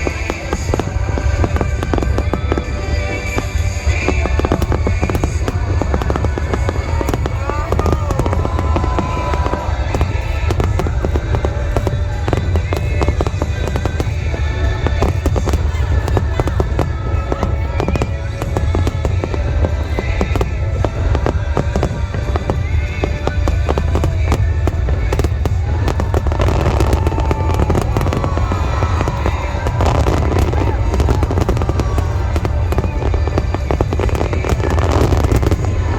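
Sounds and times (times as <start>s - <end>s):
fireworks bangs and crackles: 0.0s - 35.9s
fireworks rumble: 0.0s - 35.9s
music: 0.0s - 35.9s.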